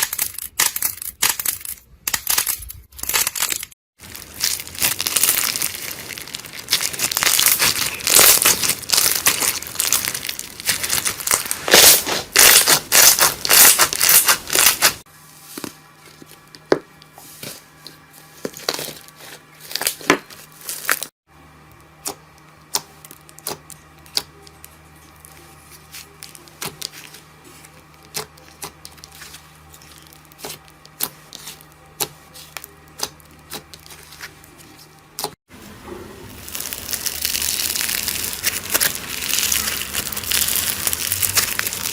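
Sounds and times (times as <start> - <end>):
slime crackling and popping: 0.0 - 15.0, 36.4 - 41.9.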